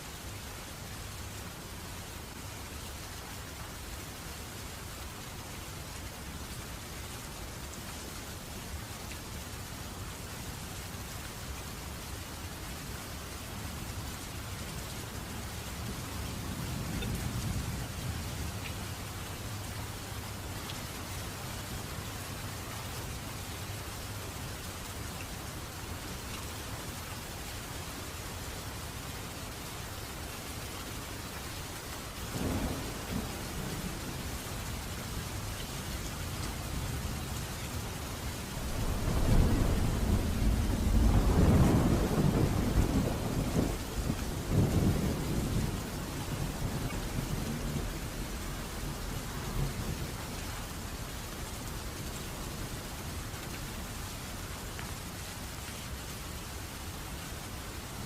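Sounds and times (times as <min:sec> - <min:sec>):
steady rain falling: 0:00.0 - 0:58.0
thunder rumbling: 0:32.3 - 0:34.4, 0:38.6 - 0:50.1.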